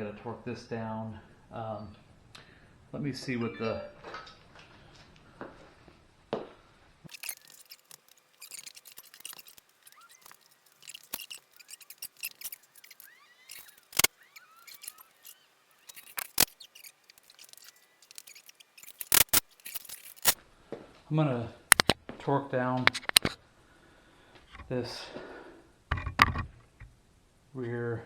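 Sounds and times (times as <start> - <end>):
hand tools clicking and clinking: 7.1 - 20.4
sharp metallic clicks: 7.1 - 20.4.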